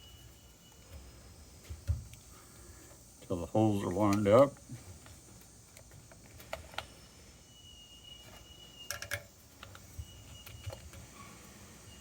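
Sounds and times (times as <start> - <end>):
faint high steady tone: 0.0 - 12.0
small metal parts clicking: 8.3 - 11.1.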